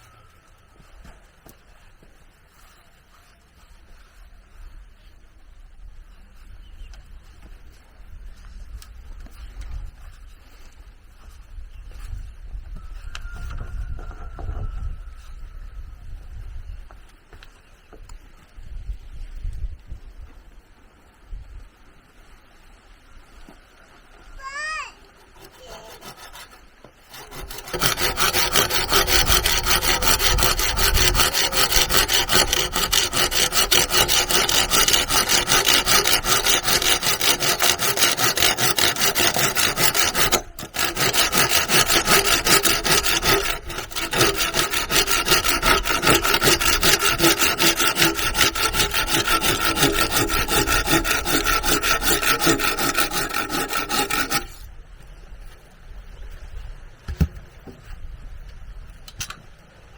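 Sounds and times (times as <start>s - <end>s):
hand saw cutting wood: 25.2s - 54.7s.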